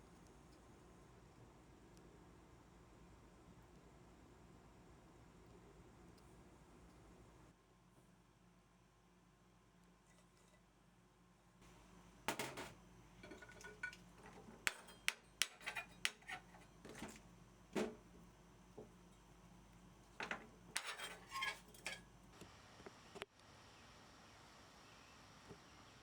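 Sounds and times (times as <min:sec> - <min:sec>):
utensils and dishes clinking: 0:12.4 - 0:17.2, 0:20.2 - 0:22.1.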